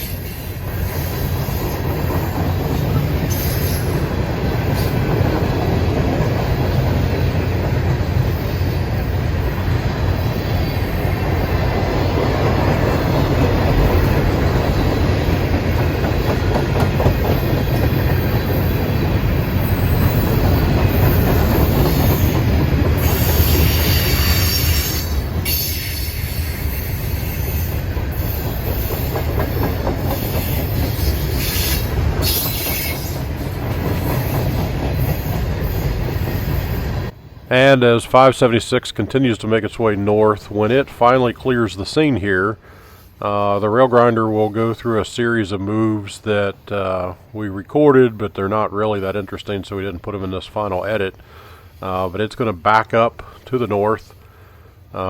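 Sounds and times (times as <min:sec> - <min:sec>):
train wheels rumbling on rails: 0:00.0 - 0:54.2
high-pitched wheel screeching: 0:23.0 - 0:28.4.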